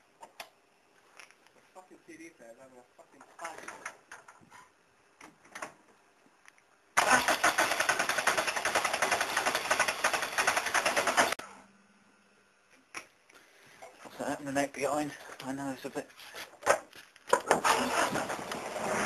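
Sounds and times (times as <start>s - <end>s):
diesel engine turning over: 7.0s - 11.4s, 17.4s - 19.0s.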